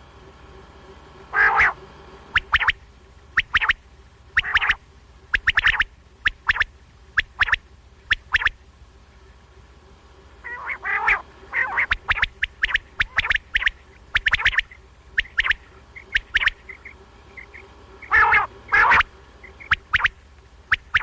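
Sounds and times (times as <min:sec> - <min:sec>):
quail calling: 0:01.3 - 0:08.6, 0:10.4 - 0:21.0.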